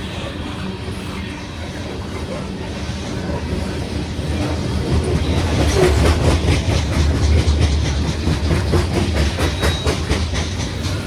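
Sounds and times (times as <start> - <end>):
train cars rumbling past: 0.0 - 11.0
wheels clacking over rail joints: 2.2 - 11.0.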